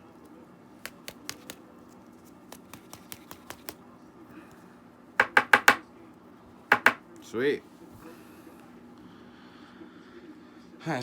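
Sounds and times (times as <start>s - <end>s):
trading cards clicking: 0.8s - 1.6s, 2.2s - 3.8s
loud knocks: 5.2s - 5.8s, 6.7s - 7.0s.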